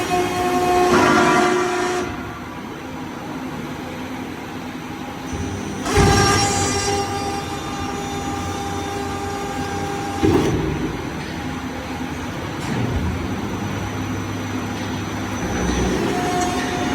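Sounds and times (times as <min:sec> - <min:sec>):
high machine whine: 0:04.7 - 0:16.9
hydraulic press humming: 0:05.0 - 0:16.9.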